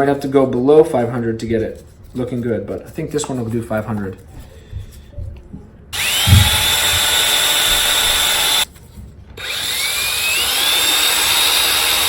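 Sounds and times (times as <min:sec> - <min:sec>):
power sander motor whining: 0:06.0 - 0:08.7, 0:09.4 - 0:12.0.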